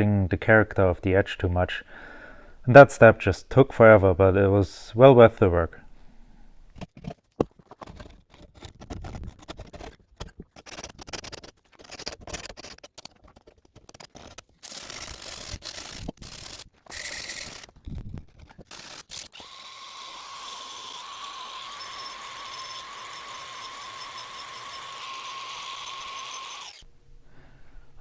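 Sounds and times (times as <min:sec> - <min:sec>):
faint steady hum: 0:21.8 - 0:28.0.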